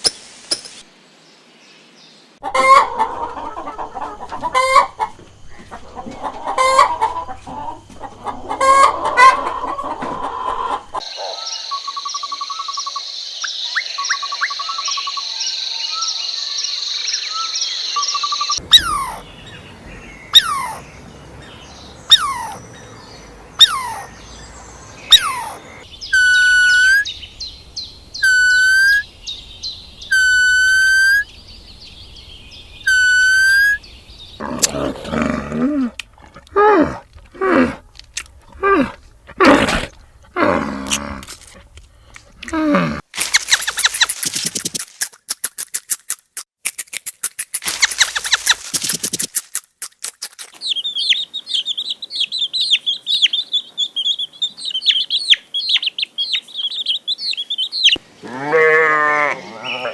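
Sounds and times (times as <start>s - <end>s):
chickens clucking: 2.4s - 11.4s, 18.6s - 24.3s
falling whistled bird calls: 17.1s - 20.9s, 25.0s - 34.4s, 50.6s - 58.0s
high-pitched bird trill: 17.3s - 19.6s, 22.1s - 22.6s, 25.1s - 27.5s, 28.2s - 31.4s, 32.8s - 33.9s
short pitched bird calls: 28.2s - 29.1s, 30.0s - 31.3s.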